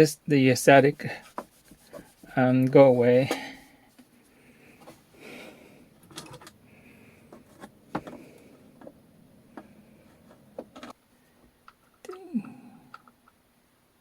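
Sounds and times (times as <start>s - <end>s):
soft rubbing: 0.0s - 5.2s.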